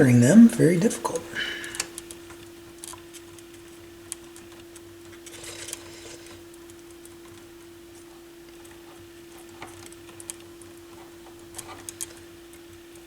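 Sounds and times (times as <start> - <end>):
steady low hum: 0.0 - 1.8.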